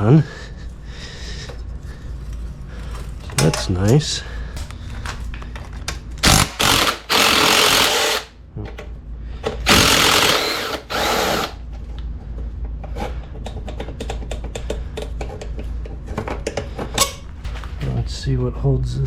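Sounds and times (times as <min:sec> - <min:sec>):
cordless power tool spinning bolts: 0:06.2 - 0:08.3, 0:09.7 - 0:11.6.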